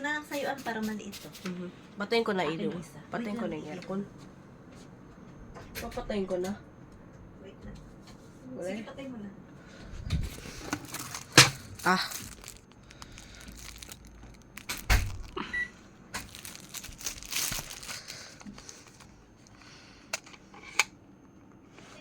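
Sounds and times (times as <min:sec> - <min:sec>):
rustling: 0:10.2 - 0:15.4, 0:16.2 - 0:19.1.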